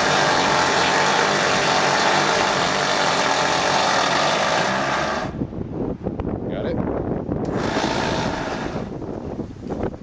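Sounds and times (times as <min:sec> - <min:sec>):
winch running under load: 0:00.0 - 0:05.4, 0:07.4 - 0:09.0.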